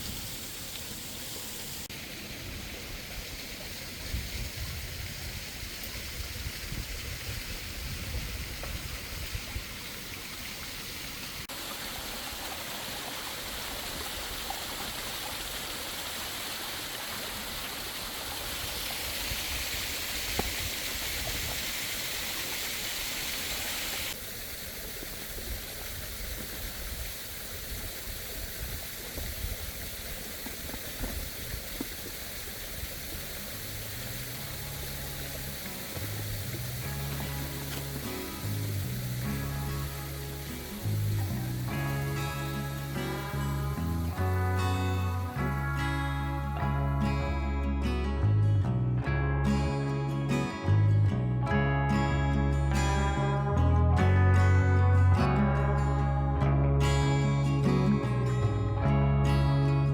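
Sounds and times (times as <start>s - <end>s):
waterfall rushing: 0.0s - 47.1s.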